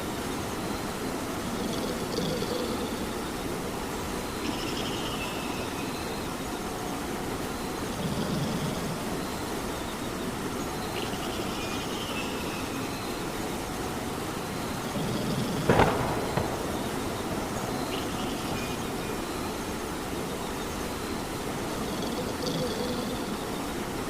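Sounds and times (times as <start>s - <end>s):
steady rainfall: 0.0s - 24.0s
sudden sharp crack: 15.7s - 18.6s.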